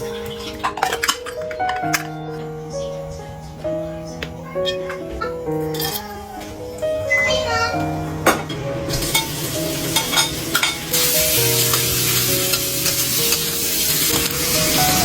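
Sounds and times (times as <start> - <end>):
food sizzling while frying: 8.1 - 15.0.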